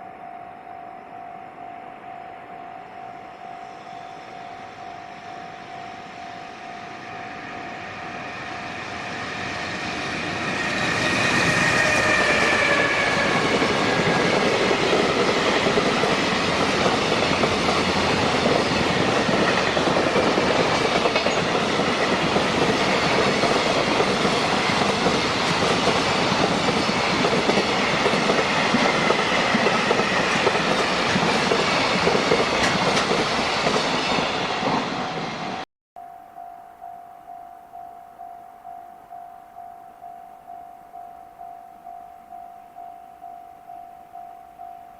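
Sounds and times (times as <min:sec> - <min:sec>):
locomotive whine: 0:00.0 - 0:35.6
crossing warning bell: 0:00.0 - 0:44.9
train wheel clatter: 0:08.8 - 0:35.6.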